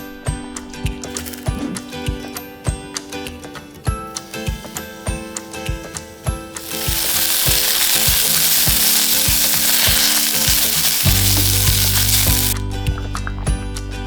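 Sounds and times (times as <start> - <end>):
background music with beat: 0.0 - 14.0
food sizzling in a pan: 4.1 - 12.6.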